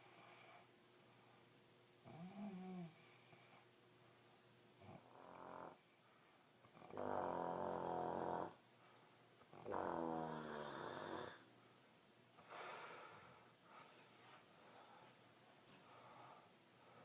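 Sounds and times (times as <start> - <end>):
person snoring: 6.8 - 8.6, 9.5 - 11.5
breathy breath: 12.4 - 15.2.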